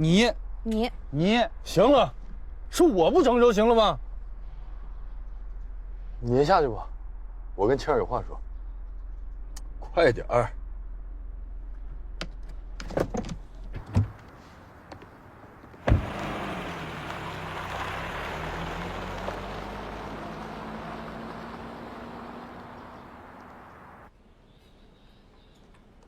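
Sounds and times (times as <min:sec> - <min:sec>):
low hum: 0:00.0 - 0:12.8
sharp thump: 0:15.8 - 0:16.4.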